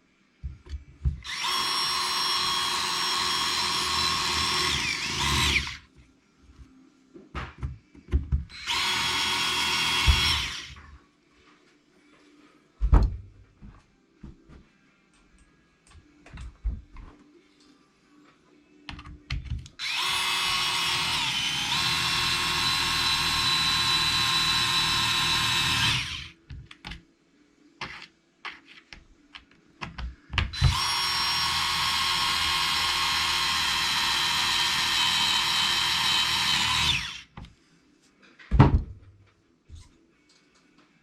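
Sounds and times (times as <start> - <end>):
power screwdriver running: 1.2 - 5.8, 8.5 - 10.8, 19.8 - 26.3, 30.6 - 37.3.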